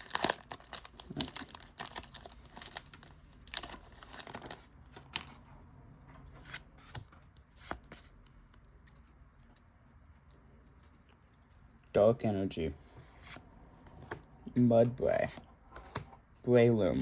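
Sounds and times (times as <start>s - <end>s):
foil wrapper tearing and crinkling: 0.0s - 5.2s.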